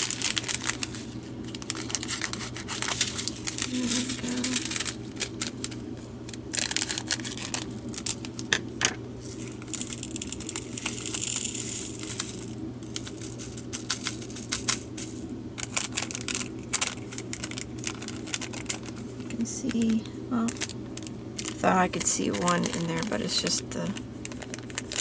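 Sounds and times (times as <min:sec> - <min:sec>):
plastic packets crinkling: 0:00.0 - 0:08.6, 0:09.3 - 0:25.0
tiny beads pouring into container: 0:09.6 - 0:18.8.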